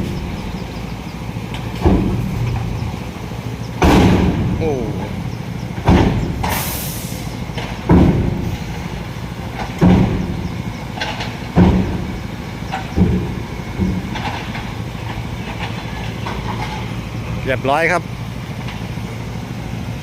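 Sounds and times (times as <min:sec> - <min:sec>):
loud metal clanks: 0:00.0 - 0:17.4
diesel truck engine running: 0:00.0 - 0:20.0
air hiss: 0:06.4 - 0:07.4.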